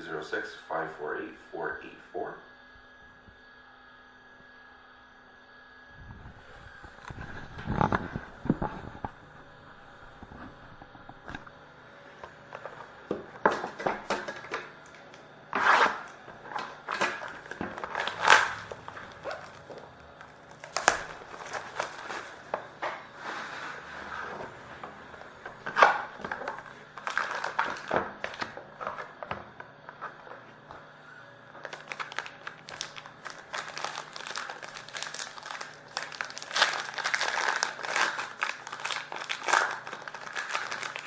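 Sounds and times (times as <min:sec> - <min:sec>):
plastic wrap crinkling: 0:06.6 - 0:09.2, 0:14.1 - 0:24.4, 0:25.6 - 0:29.1, 0:31.6 - 0:41.0.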